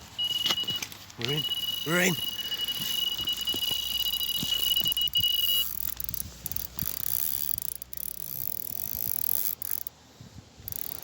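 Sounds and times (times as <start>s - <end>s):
electronic bite alarm tone: 0.2s - 5.8s
fishing reel clicking: 4.2s - 10.0s, 10.7s - 11.0s.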